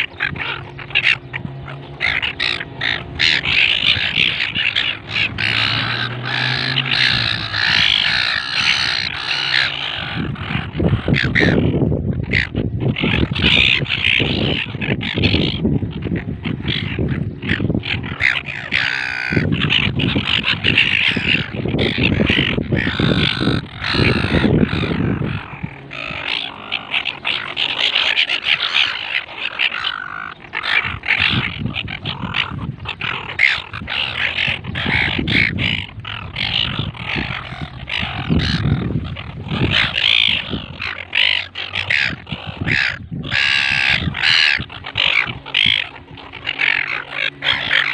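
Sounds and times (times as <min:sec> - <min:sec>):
low rumble: 0:00.0 - 0:27.8
gulls calling and squawking: 0:00.0 - 0:47.9.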